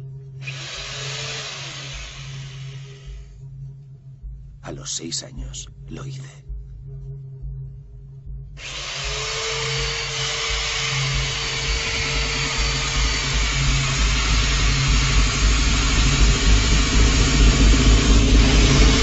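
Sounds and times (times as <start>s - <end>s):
power drill motor running: 0.4s - 3.3s, 8.6s - 19.0s.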